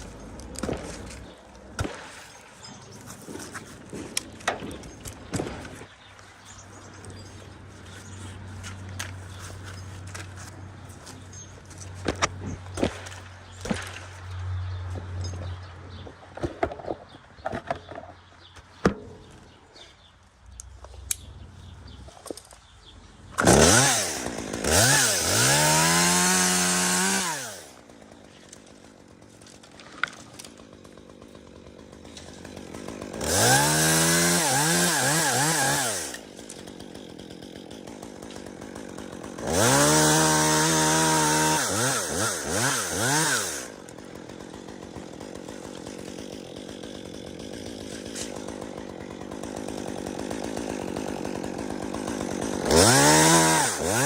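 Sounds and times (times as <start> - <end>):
chainsaw revving: 23.2 - 29.2, 29.8 - 54.0.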